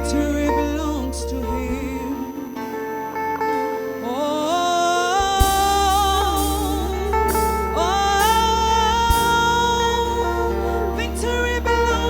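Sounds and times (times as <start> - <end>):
keyboard and bass: 0.0 - 12.0
person singing: 0.0 - 12.0
cymbal hits: 5.4 - 10.3.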